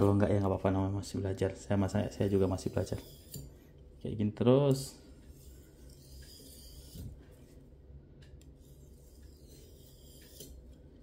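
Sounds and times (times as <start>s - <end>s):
knife scraping on whetstone: 2.0s - 3.6s, 5.3s - 7.6s, 8.6s - 10.8s.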